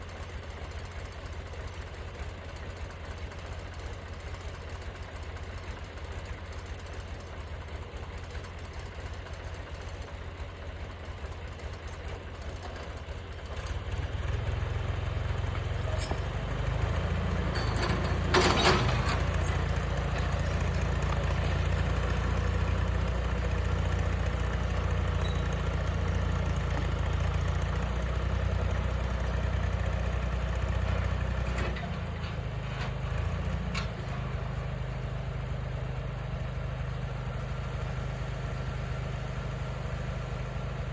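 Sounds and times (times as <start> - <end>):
heavy machine engine running: 13.5 - 35.6.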